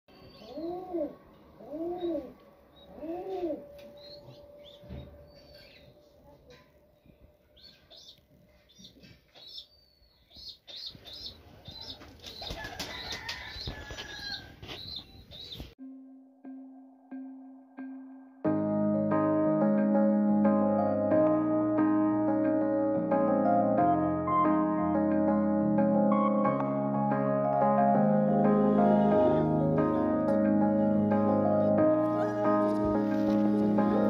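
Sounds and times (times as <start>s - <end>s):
pigeons cooing: 0.3s - 5.8s
wing flapping: 11.9s - 14.1s.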